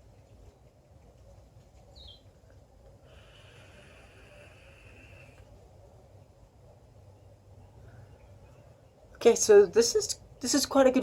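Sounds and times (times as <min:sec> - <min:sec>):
breathy hiss of vaping: 0:03.0 - 0:05.5.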